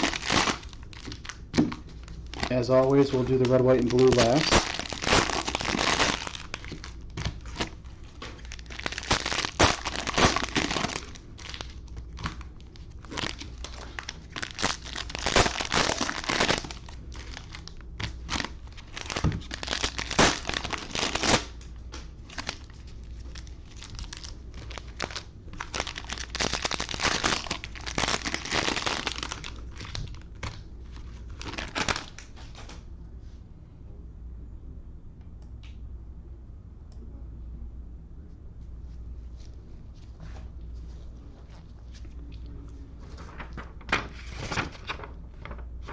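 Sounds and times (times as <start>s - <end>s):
cellophane crinkling and tearing: 0.0s - 21.6s, 22.3s - 32.6s, 43.2s - 45.9s.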